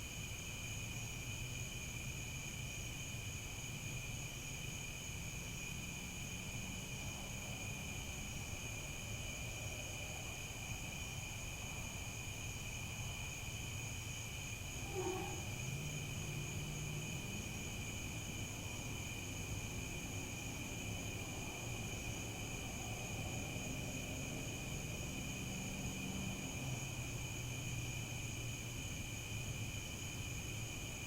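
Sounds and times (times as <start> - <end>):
crickets chirping: 0.0 - 31.0
low-pitched animal call: 14.8 - 15.5.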